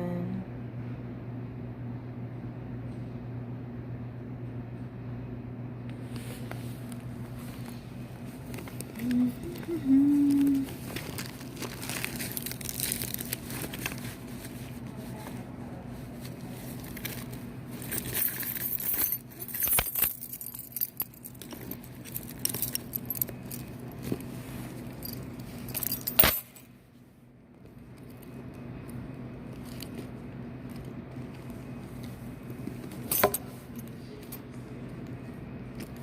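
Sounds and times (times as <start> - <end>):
steady low hum: 0.0 - 36.0
metallic clinks and jingles: 16.8 - 26.7.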